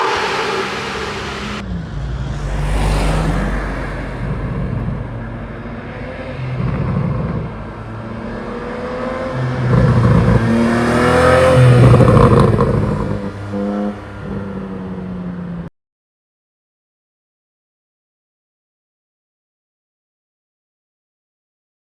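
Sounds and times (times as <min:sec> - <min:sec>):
exhaust crackles: 0:00.0 - 0:15.0
sports car engine revving: 0:00.0 - 0:15.2.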